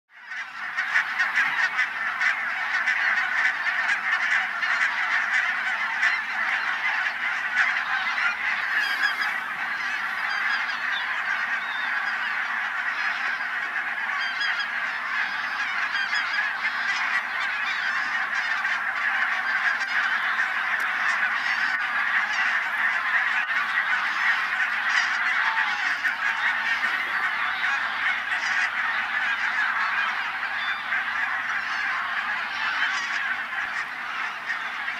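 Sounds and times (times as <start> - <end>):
flock of geese calling: 0.1 - 34.9.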